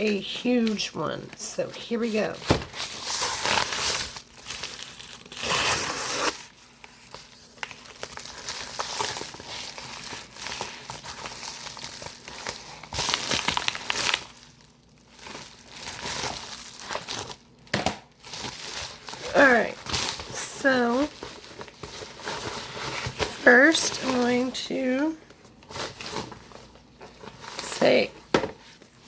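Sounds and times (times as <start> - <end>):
packaging tearing and crinkling: 2.5 - 24.3.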